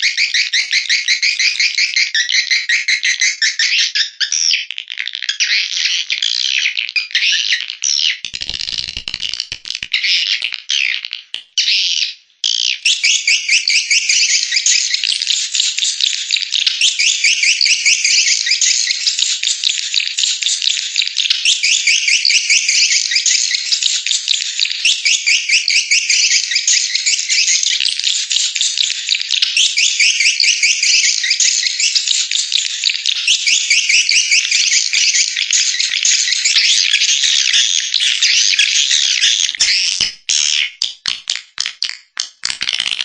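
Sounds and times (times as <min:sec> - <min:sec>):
high-pitched bird twittering: 0:00.0 - 0:04.7, 0:11.6 - 0:40.8.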